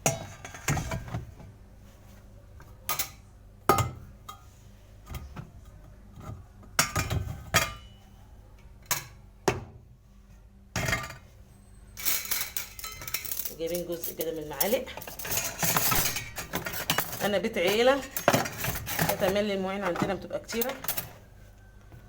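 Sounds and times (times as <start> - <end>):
dishes and glassware clinking: 0.0 - 1.2, 6.8 - 8.0, 12.0 - 21.2.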